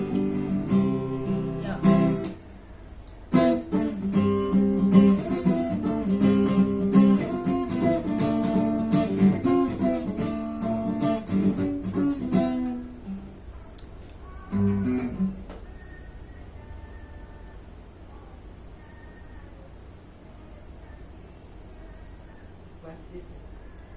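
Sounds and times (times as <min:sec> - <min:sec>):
acoustic guitar strumming: 0:00.0 - 0:02.5, 0:03.2 - 0:13.4, 0:14.2 - 0:16.2.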